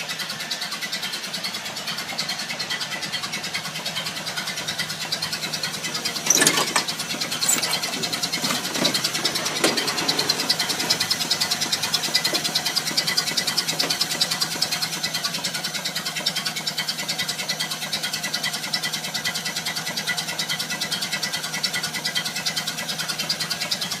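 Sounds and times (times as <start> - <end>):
car engine idling: 0.0 - 19.2.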